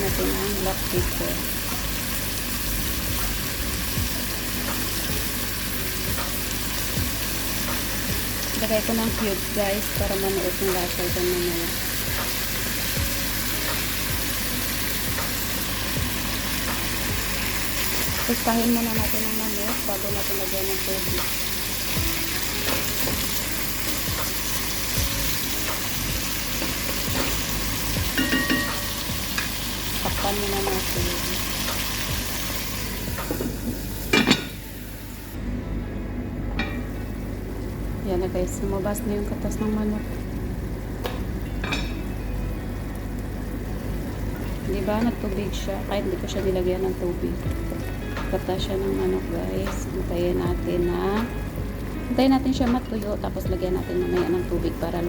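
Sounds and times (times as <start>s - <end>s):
chicken sizzling in hot oil: 0.0s - 35.4s.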